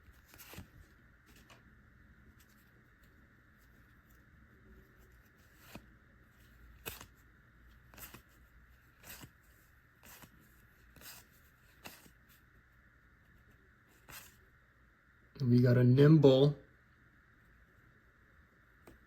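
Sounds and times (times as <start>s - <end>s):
cards sliding with a swish: 0.2s - 1.6s, 5.0s - 12.4s, 13.9s - 14.4s.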